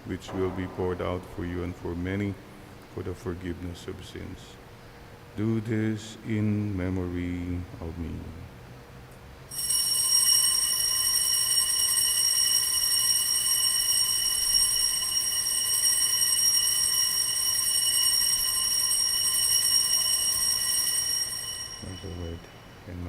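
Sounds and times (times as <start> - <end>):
altar bells ringing: 9.5 - 23.0.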